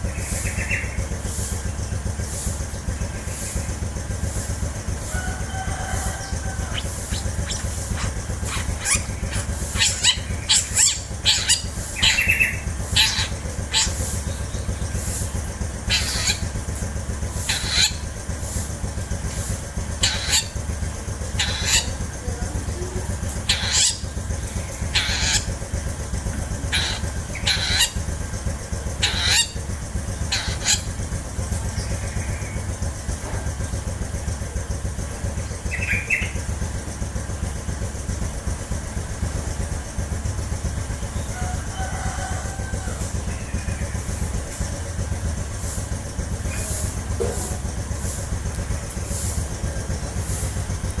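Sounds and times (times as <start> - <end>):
steady low hum: 0.0 - 51.0
bird giving short harsh calls: 5.7 - 14.2, 26.7 - 28.0, 29.0 - 29.5, 30.3 - 30.8.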